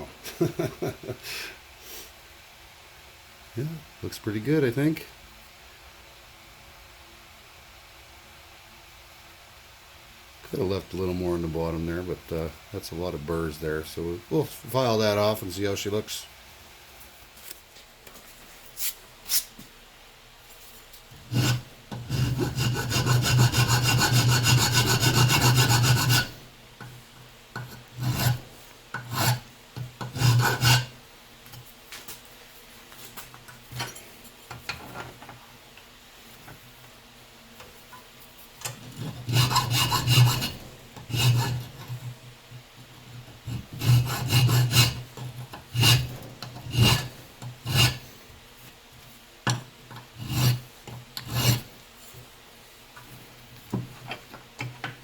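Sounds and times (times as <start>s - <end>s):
file scraping metal: 21.1s - 27.0s, 27.6s - 31.0s, 38.6s - 42.2s, 43.0s - 48.2s, 49.5s - 51.8s.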